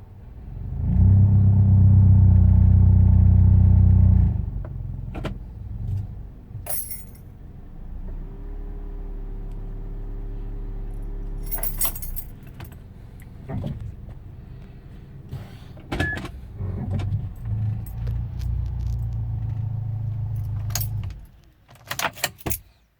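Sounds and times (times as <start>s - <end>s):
car engine idling: 0.0s - 21.6s
metallic clicks and jingles: 6.7s - 7.3s, 11.4s - 12.8s, 17.2s - 22.8s.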